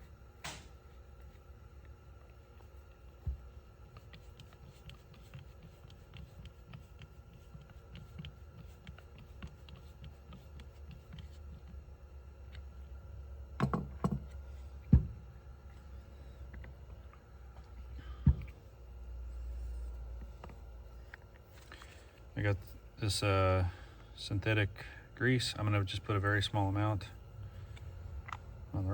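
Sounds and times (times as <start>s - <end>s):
knocks: 13.6s - 14.2s, 14.9s - 15.2s.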